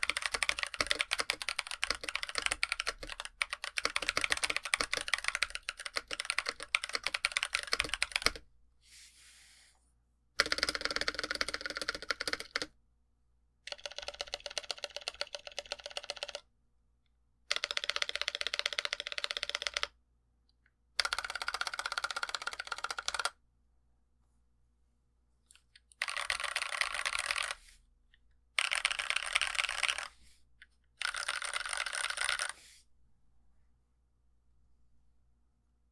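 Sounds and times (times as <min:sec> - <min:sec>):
mechanical keyboard typing: 0:00.0 - 0:08.4, 0:10.4 - 0:12.7, 0:13.7 - 0:16.4, 0:17.5 - 0:20.0, 0:21.0 - 0:23.4, 0:25.9 - 0:27.6, 0:28.6 - 0:30.2, 0:31.0 - 0:32.6.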